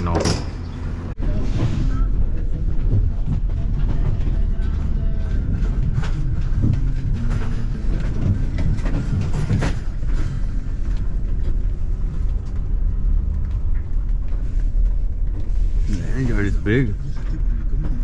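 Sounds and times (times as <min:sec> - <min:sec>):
vehicle rumbling: 0:00.0 - 0:18.0.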